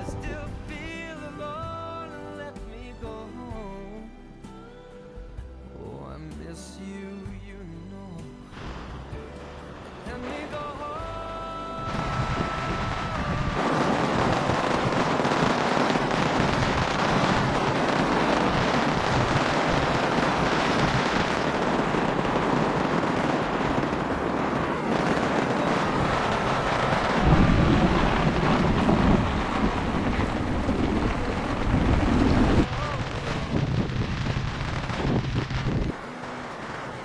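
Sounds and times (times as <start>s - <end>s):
rain hissing: 8.5s - 37.0s
wind buffeting microphone: 11.8s - 36.0s.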